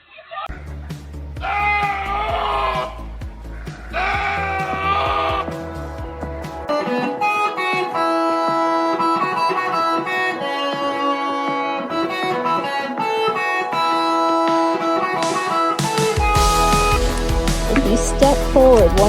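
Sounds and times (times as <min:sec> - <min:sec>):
plucked electric guitar notes: 0:05.4 - 0:19.0.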